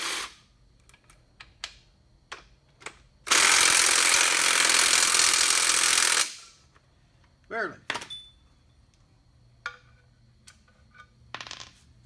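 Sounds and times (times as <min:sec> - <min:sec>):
power drill running: 0:00.0 - 0:00.3, 0:03.3 - 0:06.4.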